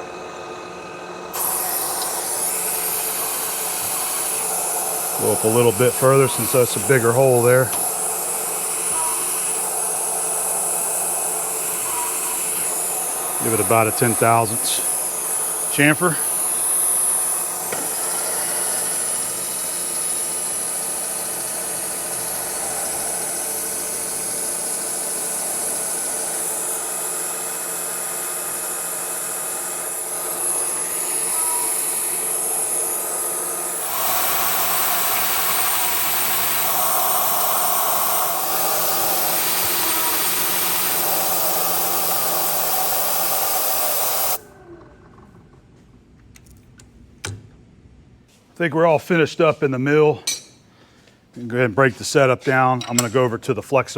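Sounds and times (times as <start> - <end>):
milling machine spindle running: 0.4 - 44.4
mist coolant hissing: 1.4 - 44.4.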